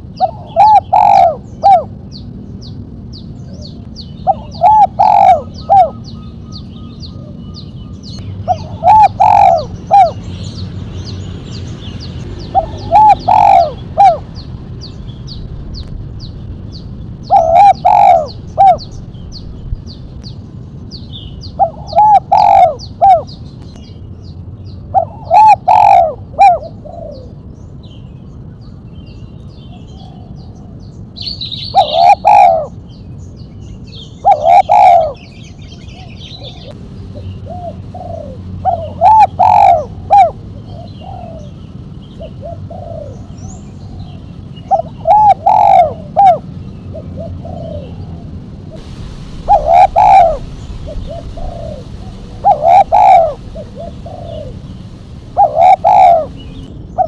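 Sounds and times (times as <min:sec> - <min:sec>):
small birds chirping: 0:00.0 - 0:57.0
dove cooing: 0:00.2 - 0:02.0, 0:03.5 - 0:07.6, 0:08.5 - 0:10.2, 0:12.4 - 0:14.4, 0:17.2 - 0:19.0, 0:21.6 - 0:23.4, 0:25.0 - 0:27.4, 0:31.8 - 0:32.7, 0:34.2 - 0:35.3, 0:37.4 - 0:41.6, 0:42.2 - 0:48.2, 0:48.8 - 0:56.7.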